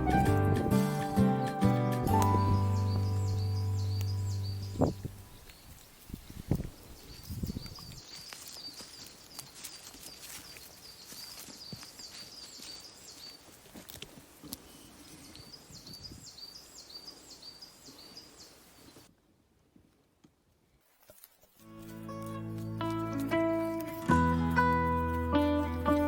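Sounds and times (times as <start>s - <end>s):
small songbird singing: 1.4s - 13.5s, 14.6s - 19.1s
light clicks and scuffs: 5.4s - 15.4s.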